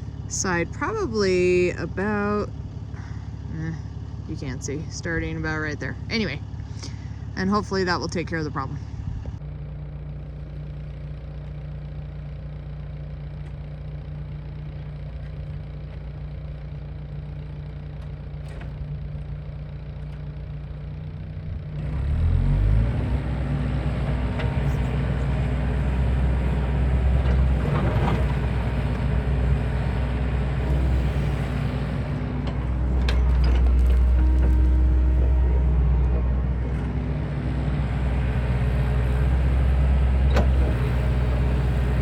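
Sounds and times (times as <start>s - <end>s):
engine running: 0.0s - 42.0s.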